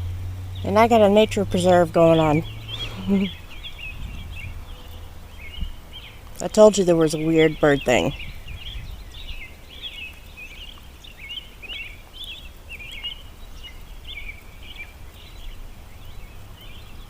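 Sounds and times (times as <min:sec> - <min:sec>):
low rumble: 0:00.0 - 0:06.4, 0:07.8 - 0:09.5
birds chirping: 0:00.0 - 0:17.0.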